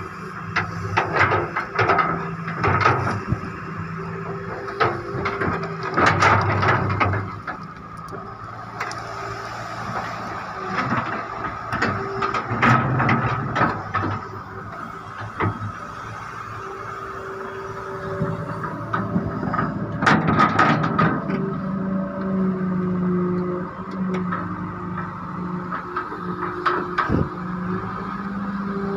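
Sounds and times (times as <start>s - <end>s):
excavator engine running: 0.0s - 28.9s
metallic knocks and clanks: 18.6s - 21.4s.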